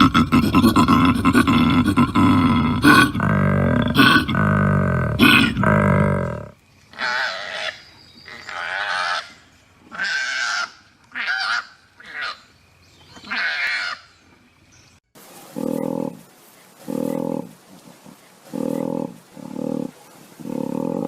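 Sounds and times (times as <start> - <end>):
koala bellowing: 0.0 - 7.8, 15.4 - 21.0.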